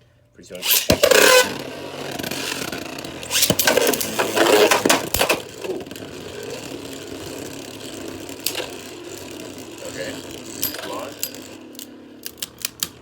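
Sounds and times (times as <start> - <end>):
spinning tops whirring: 0.5 - 12.9
launcher burst: 0.6 - 5.8
metal clashes: 0.6 - 11.7.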